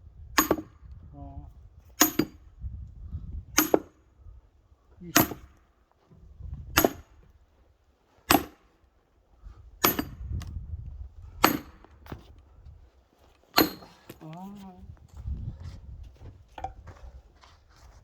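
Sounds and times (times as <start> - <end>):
axe splitting firewood: 0.4 - 0.8, 2.0 - 2.4, 3.6 - 4.0, 5.1 - 5.5, 6.8 - 7.1, 8.2 - 8.7, 9.8 - 10.5, 11.4 - 12.2, 13.5 - 14.2.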